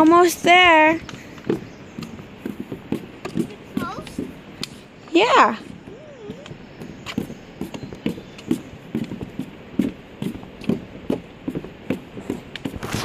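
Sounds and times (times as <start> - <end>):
footsteps on a path: 0.0 - 13.0.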